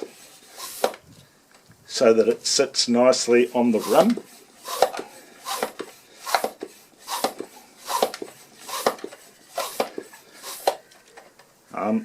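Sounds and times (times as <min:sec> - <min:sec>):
air hiss: 0:00.0 - 0:01.0, 0:03.3 - 0:10.9
bicycle pump strokes: 0:00.0 - 0:01.3, 0:02.2 - 0:11.4.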